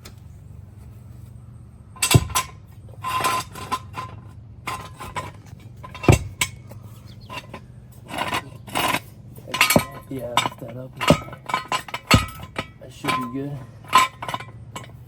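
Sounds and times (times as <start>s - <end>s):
jacking gear clanking: 0.0s - 15.0s
sharp heavy knocks: 2.0s - 2.5s, 6.0s - 6.5s.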